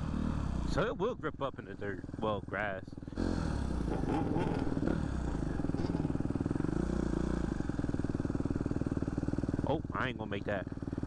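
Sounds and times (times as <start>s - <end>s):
motorcycle engine revving: 0.0s - 0.9s, 2.9s - 11.0s.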